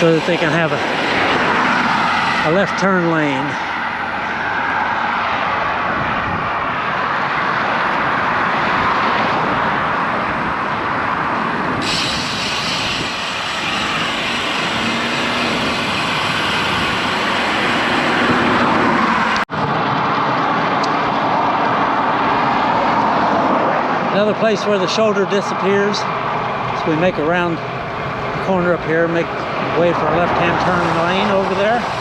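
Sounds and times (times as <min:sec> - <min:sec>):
highway traffic: 0:00.0 - 0:32.0
wind on microphone: 0:05.4 - 0:24.1.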